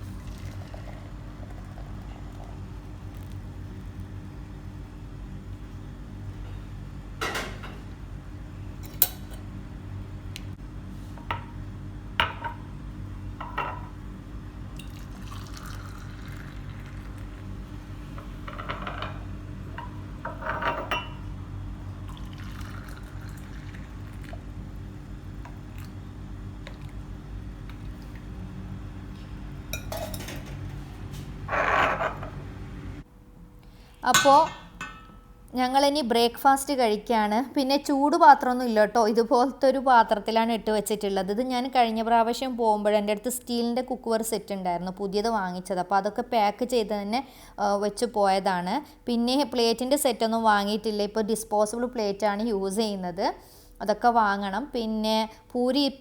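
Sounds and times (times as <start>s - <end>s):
liquid being poured: 0.0s - 2.6s, 14.8s - 17.6s, 22.1s - 24.8s
steady low hum: 0.0s - 38.8s
cups and utensils clinking: 29.8s - 30.7s, 34.1s - 35.3s.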